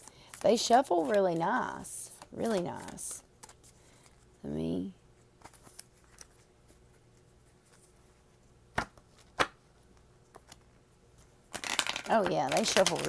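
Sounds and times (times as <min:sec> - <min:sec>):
cards being shuffled: 0:00.0 - 0:04.2, 0:05.4 - 0:08.1, 0:10.3 - 0:13.0.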